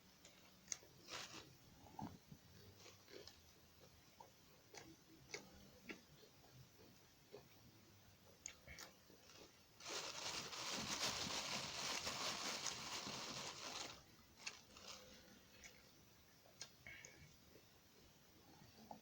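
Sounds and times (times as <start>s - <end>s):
crunching and chewing: 0.2s - 7.6s, 8.4s - 15.9s.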